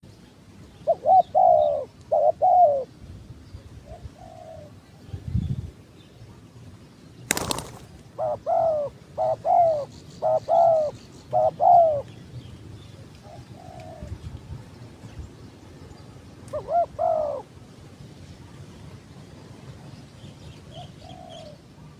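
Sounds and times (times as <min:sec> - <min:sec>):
dove cooing: 0:00.9 - 0:02.9, 0:07.3 - 0:12.0, 0:16.5 - 0:17.4.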